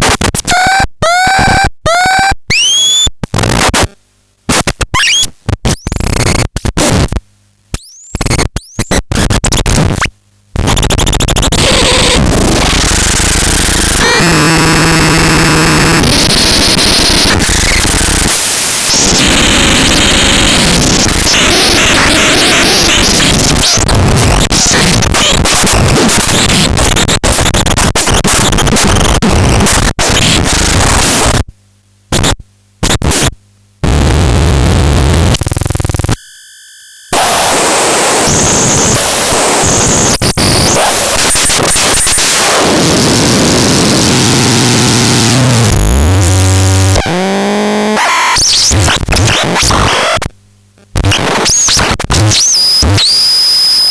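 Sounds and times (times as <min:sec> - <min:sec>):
harsh distorted electronic noise: 0:00.0 - 0:07.2, 0:07.9 - 0:31.5, 0:32.1 - 0:53.9
steady buzzing tone: 0:31.1 - 0:51.2.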